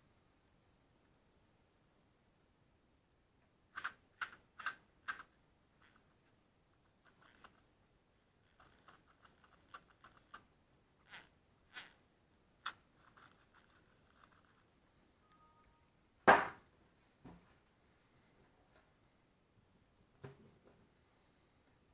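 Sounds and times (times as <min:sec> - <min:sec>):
small hard parts clicking: 0:03.8 - 0:06.1, 0:07.0 - 0:07.6, 0:08.4 - 0:10.4, 0:12.6 - 0:14.7
sharp knock: 0:16.3 - 0:16.6.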